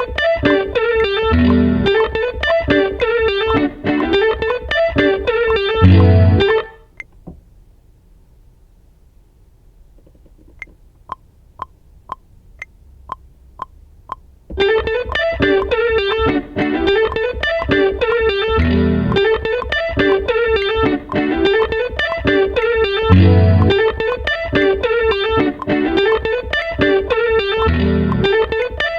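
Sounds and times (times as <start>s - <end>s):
instrumental beat music: 0.0s - 6.7s, 13.1s - 28.9s.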